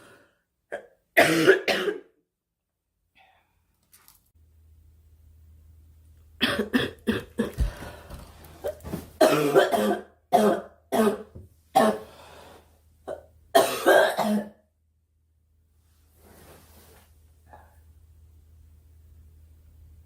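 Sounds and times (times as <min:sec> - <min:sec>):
girl coughing: 0:00.8 - 0:02.2, 0:06.4 - 0:07.6, 0:09.2 - 0:12.1, 0:13.1 - 0:14.6.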